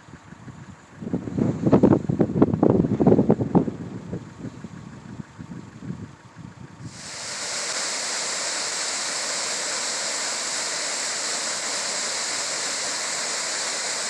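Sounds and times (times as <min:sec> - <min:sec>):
low rumble: 0:00.0 - 0:07.0
waterfall rushing: 0:06.9 - 0:14.0.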